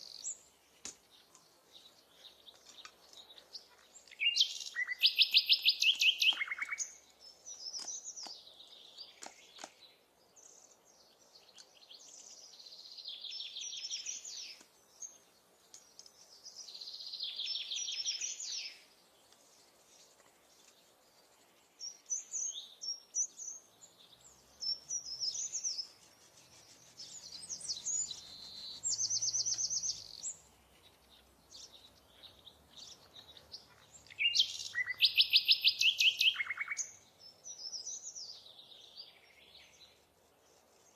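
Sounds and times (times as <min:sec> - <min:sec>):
songbirds trilling: 0:00.0 - 0:40.9
faint clicks: 0:02.5 - 0:04.2, 0:15.6 - 0:16.2.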